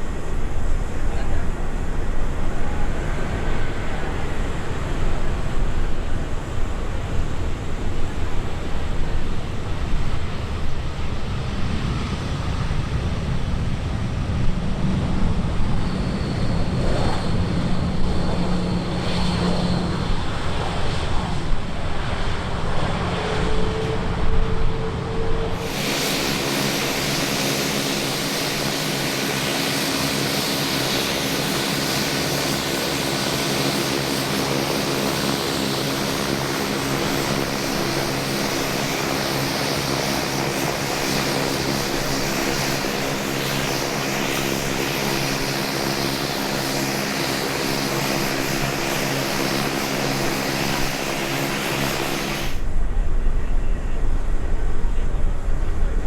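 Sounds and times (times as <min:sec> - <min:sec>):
aircraft engines humming: 0:00.0 - 0:56.0
wind rumble on microphone: 0:51.5 - 0:56.0.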